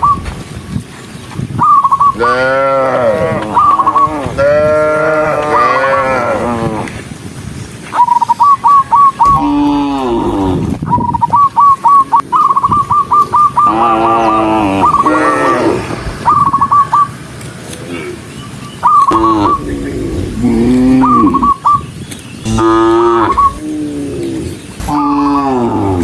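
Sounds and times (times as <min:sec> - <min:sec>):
bird whistling: 0:00.0 - 0:00.2, 0:01.6 - 0:02.2, 0:03.6 - 0:04.2, 0:07.9 - 0:09.8, 0:10.8 - 0:15.5, 0:16.2 - 0:17.2, 0:18.4 - 0:25.8
cattle mooing: 0:02.2 - 0:06.9, 0:13.6 - 0:16.0, 0:19.1 - 0:21.6, 0:22.4 - 0:26.0.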